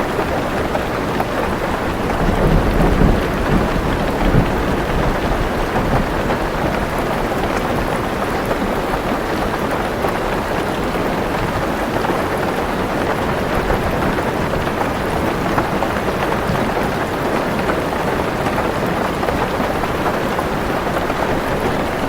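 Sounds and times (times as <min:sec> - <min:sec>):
heavy rain on car roof: 0:00.0 - 0:22.0
low thunder rumble: 0:01.9 - 0:06.9.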